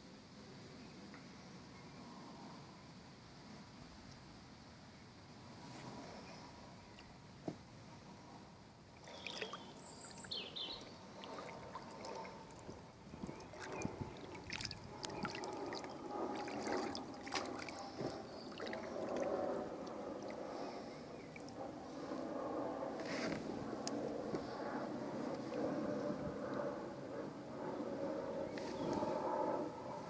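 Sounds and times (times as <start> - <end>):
paddle splashing in water: 9.0 - 21.6.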